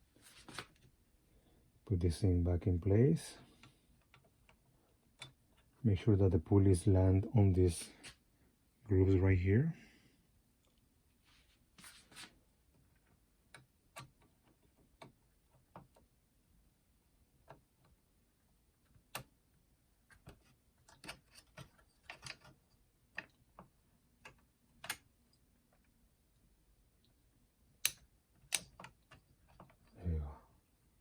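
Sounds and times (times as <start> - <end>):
small plastic clicks and taps: 27.8 - 29.8.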